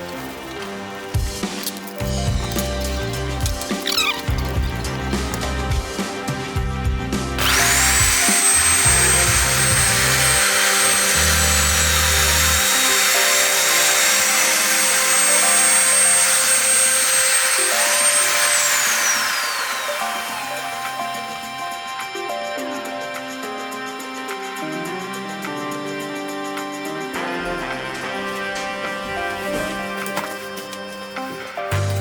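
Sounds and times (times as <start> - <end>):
power drill whining: 0.0 - 6.1, 7.4 - 21.6
background music: 0.0 - 32.0.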